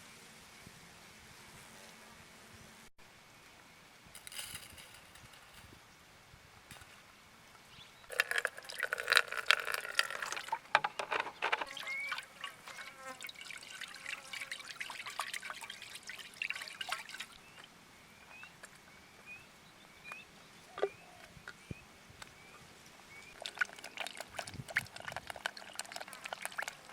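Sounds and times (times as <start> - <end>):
water trickling and dripping: 8.1 - 10.8, 11.6 - 17.7, 23.3 - 26.9
water pouring into container: 8.1 - 17.4, 23.4 - 26.9.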